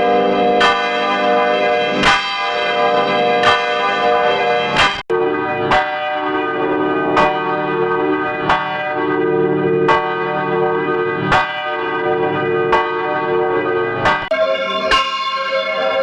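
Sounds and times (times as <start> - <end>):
church bell tolling: 0.0 - 16.0
different bell tones: 14.3 - 16.0.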